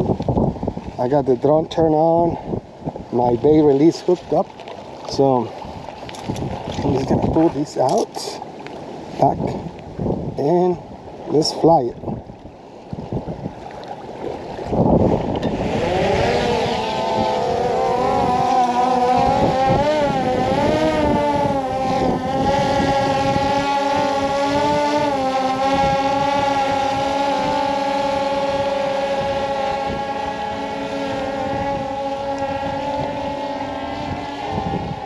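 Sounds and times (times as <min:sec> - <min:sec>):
wind buffeting microphone: 0:00.0 - 0:35.0
drone propellers whining: 0:15.0 - 0:35.0.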